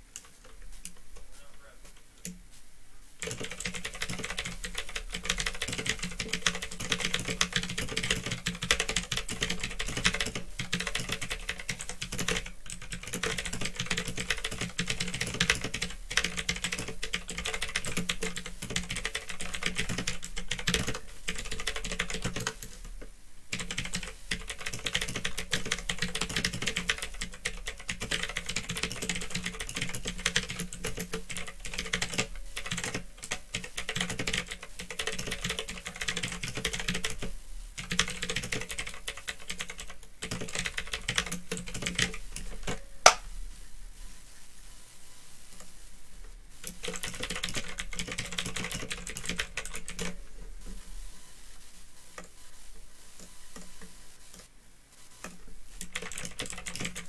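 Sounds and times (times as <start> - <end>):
steady low hum: 0.0 - 49.6
clicky mechanical keyboard typing: 3.2 - 43.2, 46.6 - 50.2, 55.2 - 57.0.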